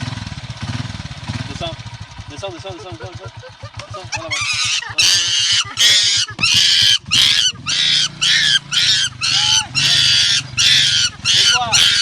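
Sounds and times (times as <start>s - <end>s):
bird squawking: 4.0s - 12.0s.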